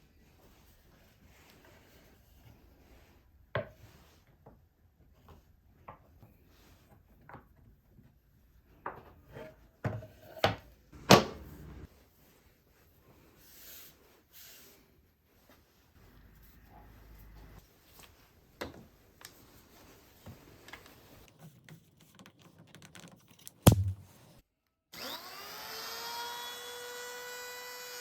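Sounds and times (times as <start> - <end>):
wood knocking on wood: 11.0 - 11.8, 23.7 - 24.0.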